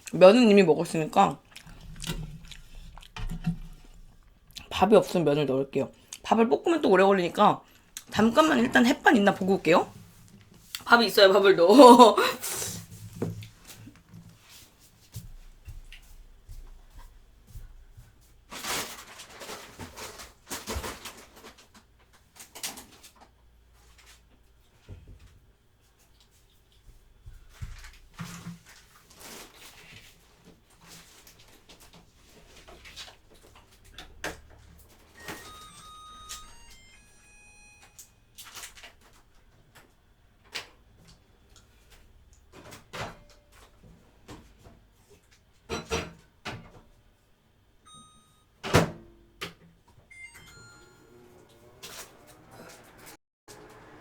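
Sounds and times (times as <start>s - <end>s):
faint household knocks and clicks: 1.7s - 4.3s, 41.9s - 47.0s
faint rustling and knocks: 1.7s - 4.4s.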